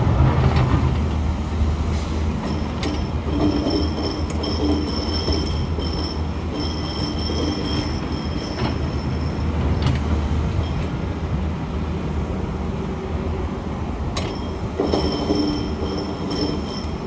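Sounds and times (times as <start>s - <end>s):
high metallic squeals: 2.4s - 9.8s, 14.4s - 17.0s.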